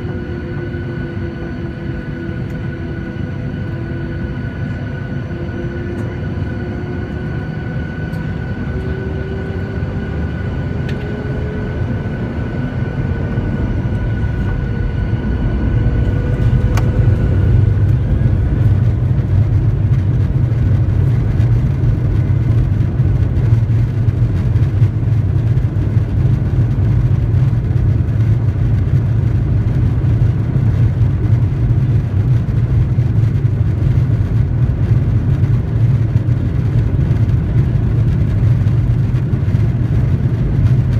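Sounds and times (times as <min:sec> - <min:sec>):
jet engines spooling up: 0:00.0 - 0:26.9.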